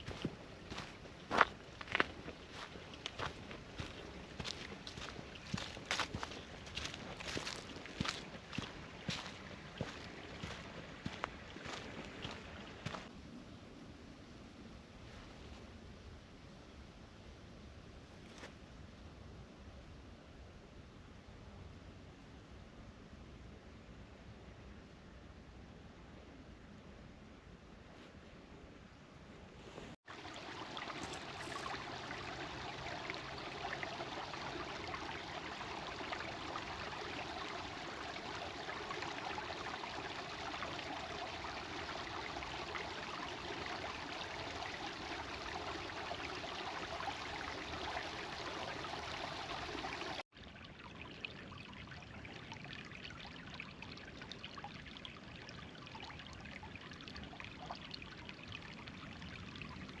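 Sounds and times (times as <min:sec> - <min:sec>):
creek water flowing: 0:00.0 - 0:13.1, 0:29.6 - 1:00.0.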